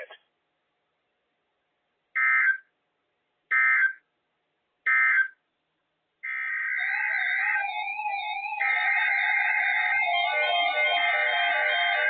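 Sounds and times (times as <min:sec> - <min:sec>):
warbling alert data tones: 0:06.3 - 0:12.0
continuous wavering tone: 0:06.5 - 0:12.0.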